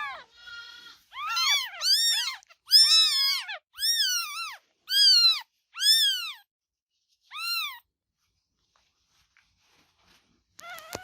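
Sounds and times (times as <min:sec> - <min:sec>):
kitten meowing: 0:01.1 - 0:06.5, 0:07.3 - 0:07.9.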